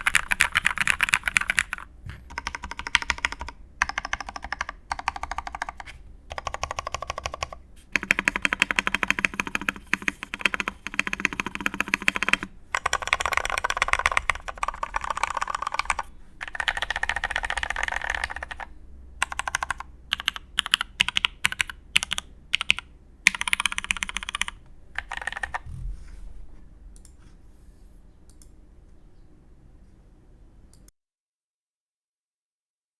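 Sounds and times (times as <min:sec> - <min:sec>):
mechanical keyboard typing: 0:00.0 - 0:25.7.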